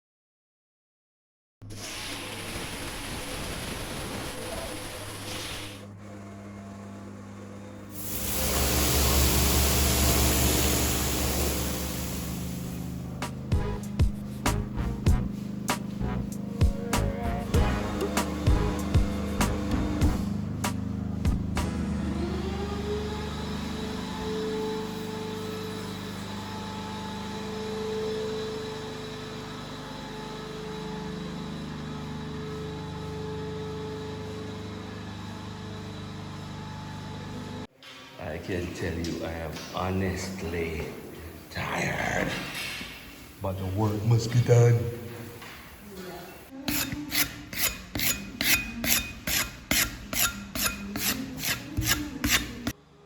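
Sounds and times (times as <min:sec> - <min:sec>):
motor humming: 0:02.2 - 0:37.7, 0:43.1 - 0:53.0
hand tool rasping strokes: 0:46.5 - 0:52.8.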